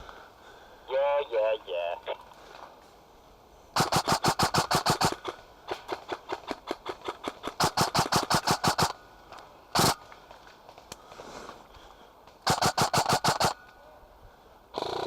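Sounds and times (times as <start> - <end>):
airsoft guns firing: 3.8 - 9.0, 9.8 - 10.1, 12.4 - 13.6.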